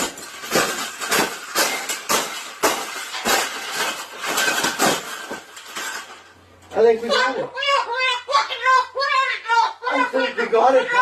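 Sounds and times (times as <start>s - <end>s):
sharp knocks and rattles: 0.0s - 7.3s.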